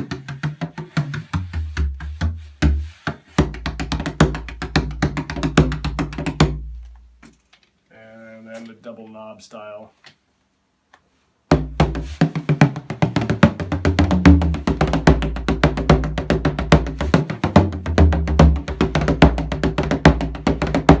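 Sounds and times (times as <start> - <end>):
frame drum played with a tipper: 11.6 - 21.0.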